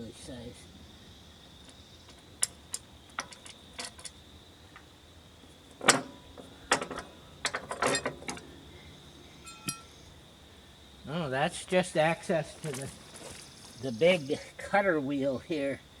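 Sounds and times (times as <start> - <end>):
wrench clinking on bolts: 6.7 - 8.5, 9.4 - 9.9.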